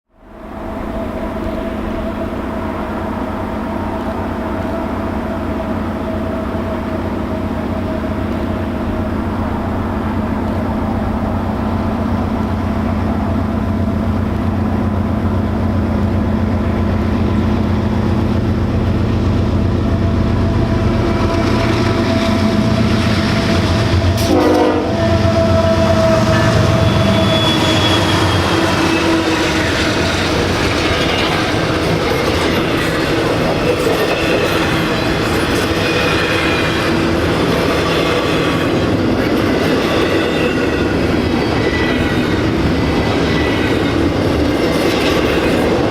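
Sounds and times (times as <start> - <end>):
diesel locomotives rumbling: 0.1 - 45.9
train wheel clatter: 1.1 - 45.9
high flange squeals: 19.9 - 44.2.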